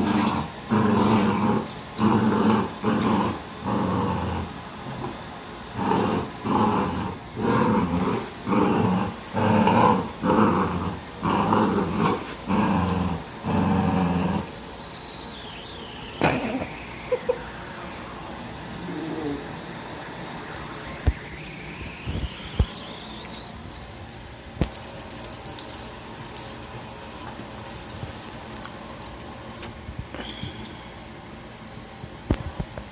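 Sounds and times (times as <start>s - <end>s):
puppies growling in play: 0.0s - 14.7s, 18.4s - 20.2s
light metal jingling and clicking: 24.1s - 28.0s, 28.6s - 31.2s.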